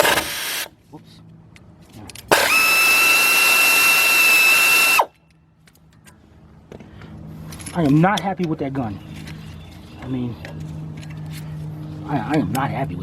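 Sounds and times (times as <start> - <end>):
air impact wrench whine: 0.0 - 0.7, 2.3 - 5.1.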